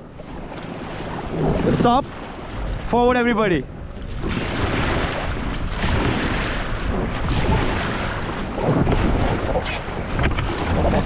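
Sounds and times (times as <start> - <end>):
rushing river water: 0.0 - 11.0
wind buffeting microphone: 0.0 - 11.0.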